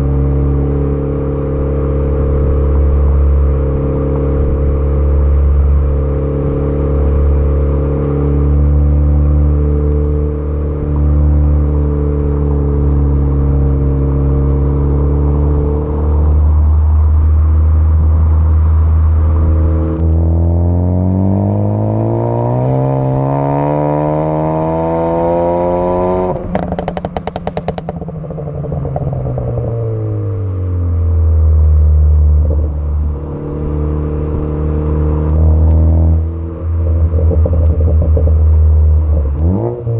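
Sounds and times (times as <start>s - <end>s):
car engine idling and revving: 0.0s - 39.9s
exhaust crackles and pops: 26.3s - 30.2s, 35.2s - 39.9s.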